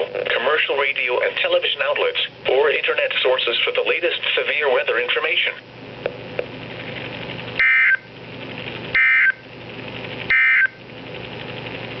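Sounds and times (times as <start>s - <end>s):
radio hiss: 0.0s - 5.7s.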